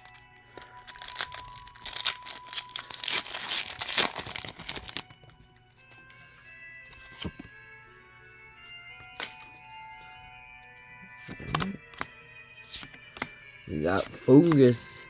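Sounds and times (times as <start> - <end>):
foil wrapper crinkling and tearing: 0.0 - 5.3
soft background music: 0.0 - 15.0.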